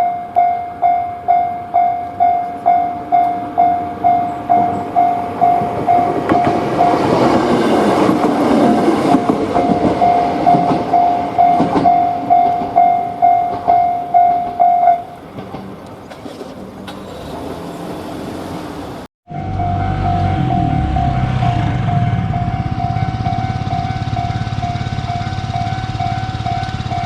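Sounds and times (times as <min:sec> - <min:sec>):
level-crossing warning bell: 0:00.0 - 0:15.3, 0:19.3 - 0:27.0
train wheels clattering: 0:04.1 - 0:17.5.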